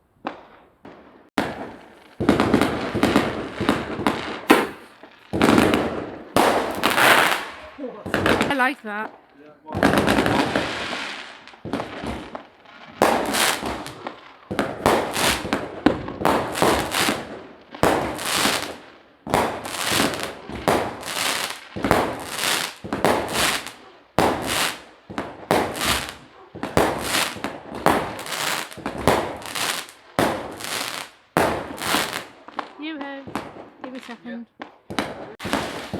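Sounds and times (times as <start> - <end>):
fireworks bangs and crackles: 0.0 - 35.9
firework hissing: 1.8 - 8.3, 14.7 - 15.6, 25.6 - 32.3, 35.3 - 35.9.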